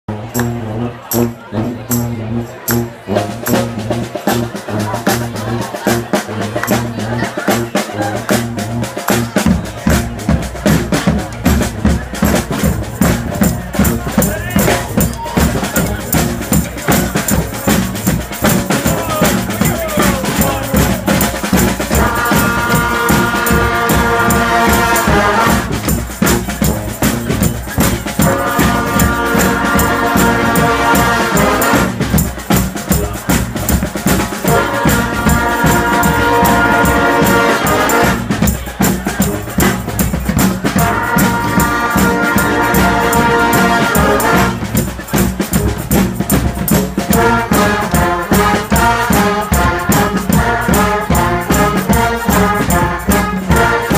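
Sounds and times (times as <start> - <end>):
brass band playing rock tune: 0.0 - 53.9
drums driving beat: 0.1 - 53.9
horns holding long chords: 0.1 - 53.9.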